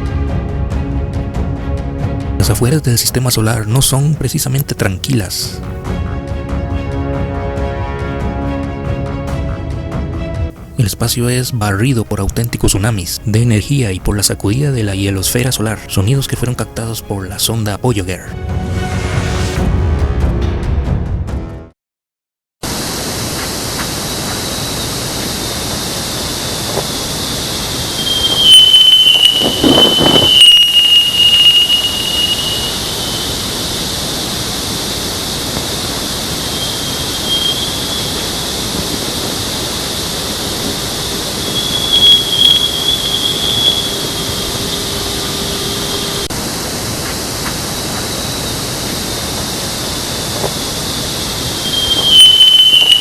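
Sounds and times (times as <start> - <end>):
steady hiss: 22.7 - 53.0
high sliding whistling tones: 27.2 - 35.5, 36.1 - 46.3, 49.8 - 53.0
loud rushing swells: 27.5 - 47.0, 47.8 - 53.0.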